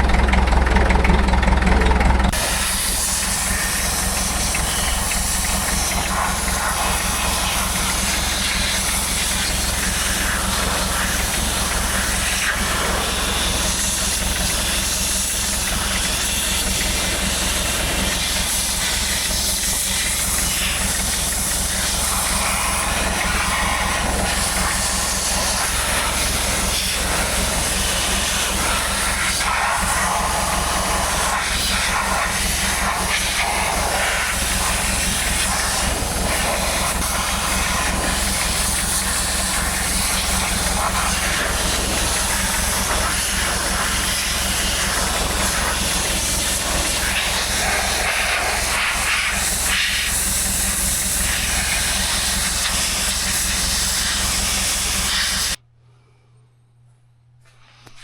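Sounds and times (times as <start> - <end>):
low hum: 0.0 - 23.5
loud hissing noise: 2.3 - 55.6.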